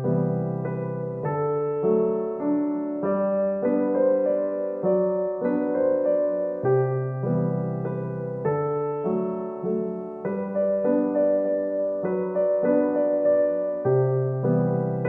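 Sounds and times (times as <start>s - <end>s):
soft piano chords: 0.0s - 15.0s.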